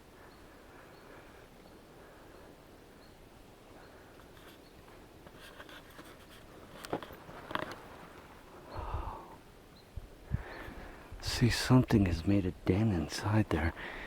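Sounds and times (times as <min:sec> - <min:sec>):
scratching and rustling of dry sticks: 0:04.2 - 0:08.7.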